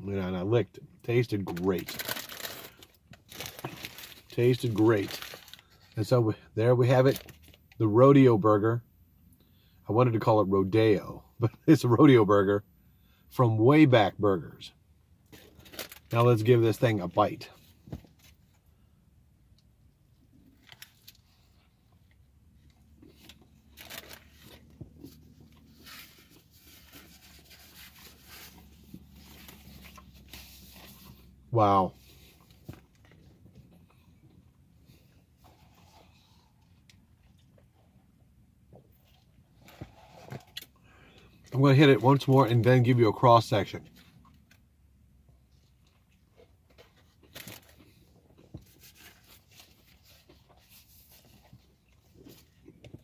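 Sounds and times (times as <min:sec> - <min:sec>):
low steady hum: 0:00.0 - 0:53.0
soft crunching and rustling: 0:01.1 - 0:06.3, 0:15.2 - 0:53.0
biting into a burger: 0:45.5 - 0:53.0.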